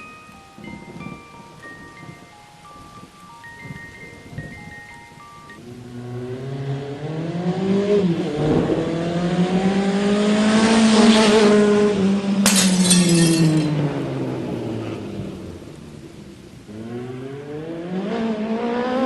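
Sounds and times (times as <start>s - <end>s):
engine revving and passing by: 5.6s - 12.5s, 16.6s - 19.0s.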